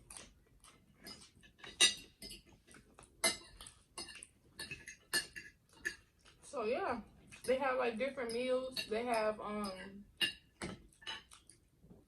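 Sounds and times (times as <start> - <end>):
cutlery scraping against plates: 1.0 - 6.2, 8.2 - 11.4.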